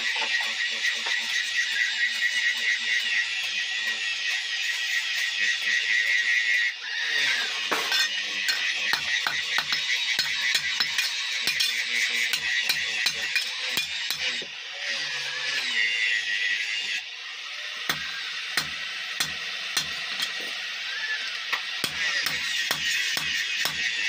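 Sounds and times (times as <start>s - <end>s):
hammer striking metal: 7.7s - 14.3s, 17.9s - 20.3s, 21.8s - 24.0s.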